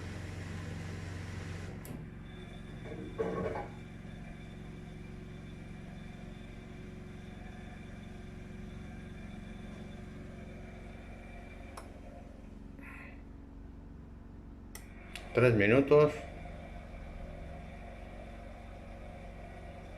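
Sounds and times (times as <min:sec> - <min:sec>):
petrol generator running: 0:00.0 - 0:19.9
washing machine spinning hum: 0:00.0 - 0:19.9.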